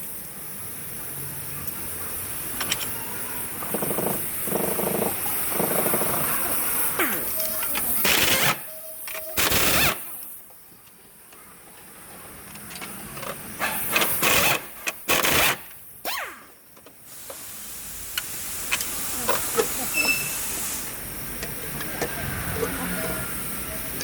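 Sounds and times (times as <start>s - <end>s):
pneumatic tool air hiss: 0.0s - 10.5s, 13.5s - 24.0s
metal tools clicking: 2.6s - 3.0s.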